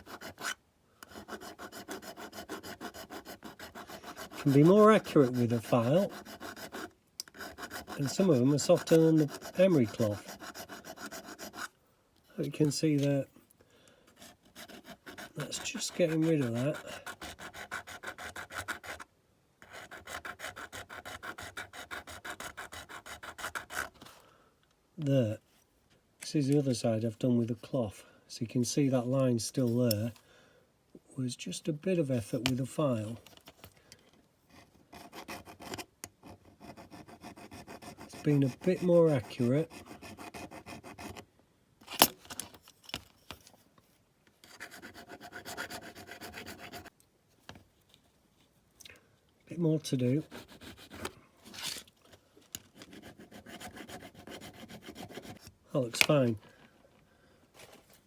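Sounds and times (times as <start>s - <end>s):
hand file rasping on metal: 0.0s - 11.7s, 14.2s - 19.0s, 19.6s - 24.0s, 35.0s - 41.2s, 44.5s - 46.9s, 50.2s - 51.1s, 52.8s - 56.1s.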